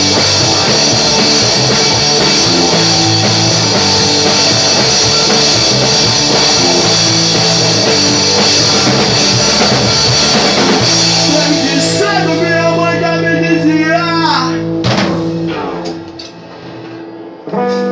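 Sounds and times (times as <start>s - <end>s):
bass guitar: 0.0s - 17.9s
drums: 0.0s - 17.9s
electric guitar: 0.0s - 17.9s.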